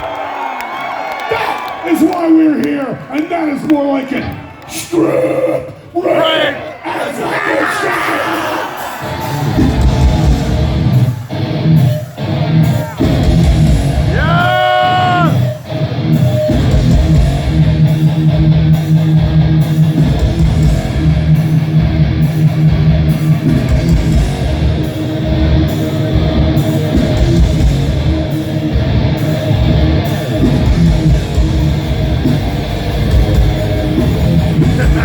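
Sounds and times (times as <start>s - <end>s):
death metal band playing live: 7.6s - 35.0s.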